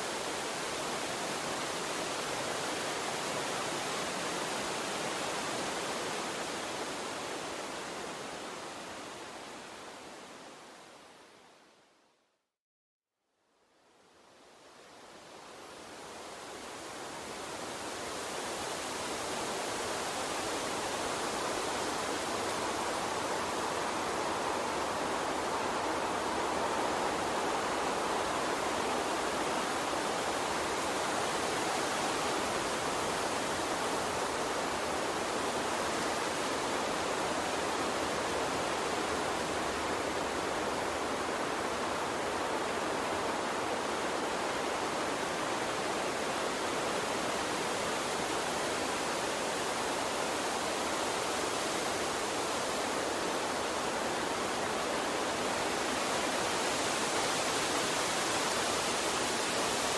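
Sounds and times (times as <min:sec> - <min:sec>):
water stream rushing: 0:15.1 - 0:59.9.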